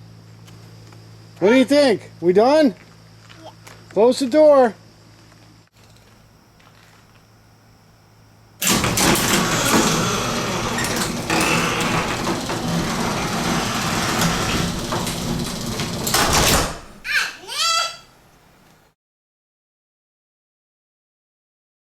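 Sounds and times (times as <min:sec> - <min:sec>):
garage door opener rumbling: 0:08.6 - 0:17.0.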